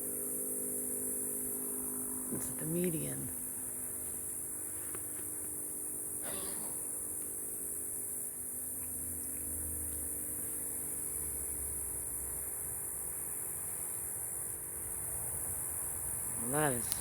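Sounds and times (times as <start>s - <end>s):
crickets chirping: 0.0s - 17.0s
low steady hum: 0.0s - 17.0s.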